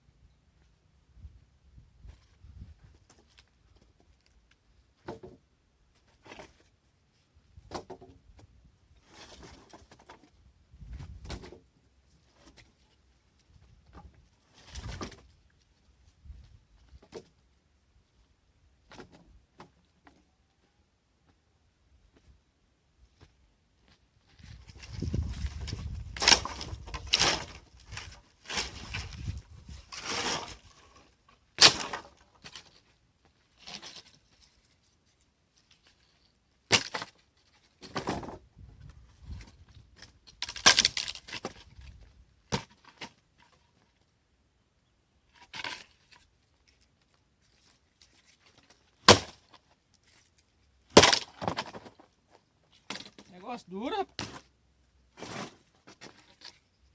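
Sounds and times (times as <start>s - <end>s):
branches rustling and scraping: 9.0s - 11.6s, 12.2s - 17.1s, 23.8s - 43.7s, 45.4s - 56.9s.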